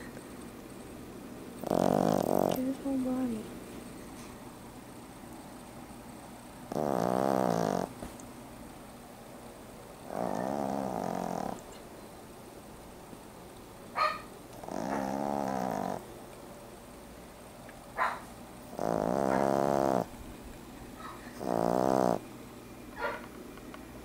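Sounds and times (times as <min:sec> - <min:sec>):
puppy snorting: 0:01.6 - 0:02.8, 0:06.6 - 0:08.2, 0:10.0 - 0:11.8, 0:14.0 - 0:16.1, 0:18.0 - 0:20.2, 0:21.0 - 0:22.3
puppy snoring: 0:01.6 - 0:03.3, 0:06.6 - 0:08.1, 0:10.0 - 0:11.8, 0:14.5 - 0:16.1, 0:18.6 - 0:20.2, 0:21.1 - 0:22.3.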